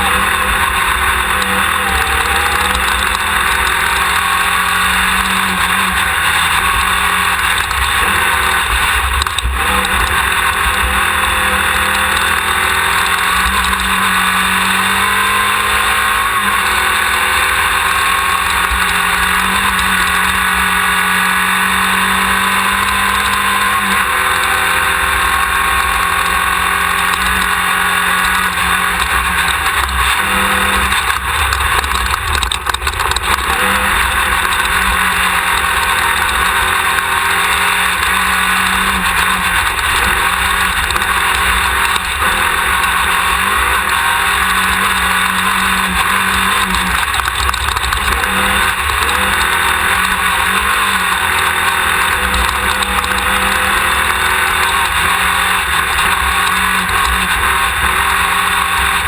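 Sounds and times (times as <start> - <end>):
race car engine running hard: 0.0 - 59.0
continuous low rumble: 28.8 - 58.0.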